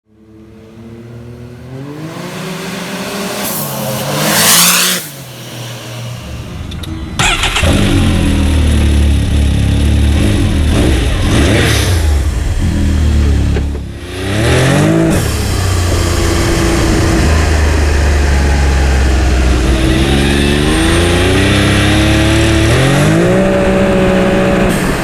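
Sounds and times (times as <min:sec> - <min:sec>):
engine revving: 0:00.2 - 0:25.0
loud rushing hiss: 0:02.0 - 0:07.4.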